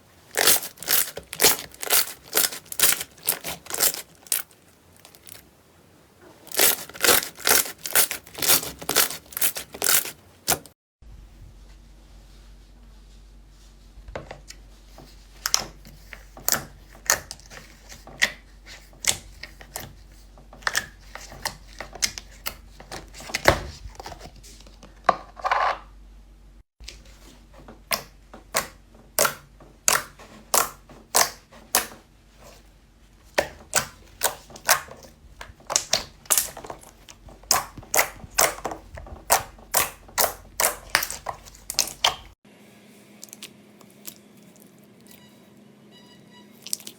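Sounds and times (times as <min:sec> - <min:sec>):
slime crackling and popping: 0:00.3 - 0:05.4, 0:06.5 - 0:10.7, 0:35.7 - 0:38.6, 0:39.3 - 0:42.3.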